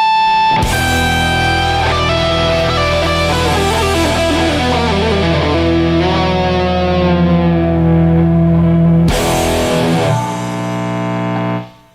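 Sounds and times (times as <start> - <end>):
distorted electric guitars: 0.0 - 11.9.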